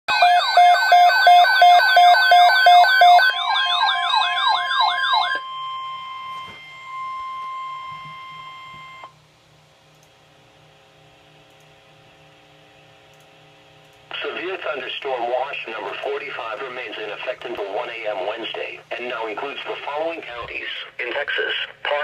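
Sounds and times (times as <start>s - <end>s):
electronic siren wail: 0.1s - 9.1s
faint hum: 5.4s - 22.0s.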